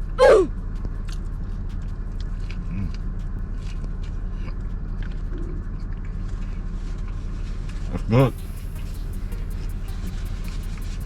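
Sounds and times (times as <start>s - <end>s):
low hum: 0.0s - 11.0s
voiced exclamation: 0.1s - 0.5s.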